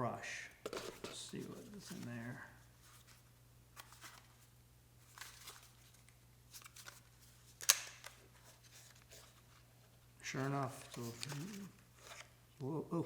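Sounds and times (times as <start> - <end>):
rustles and taps of handling: 0.6 - 2.2.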